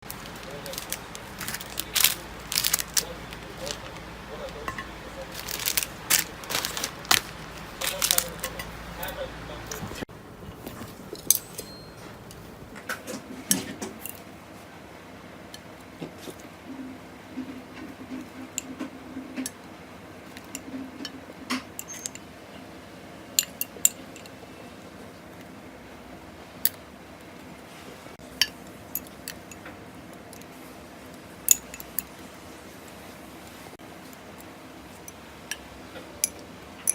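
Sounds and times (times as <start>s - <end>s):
faint steady hum: 0.0s - 36.9s
utensils clinking against bowl: 0.1s - 10.0s, 10.9s - 14.3s, 20.3s - 22.3s, 23.4s - 24.4s, 28.2s - 30.6s, 31.5s - 32.2s, 34.4s - 36.9s
utensils clicking on tableware: 20.3s - 22.2s, 31.5s - 32.1s, 36.2s - 36.9s.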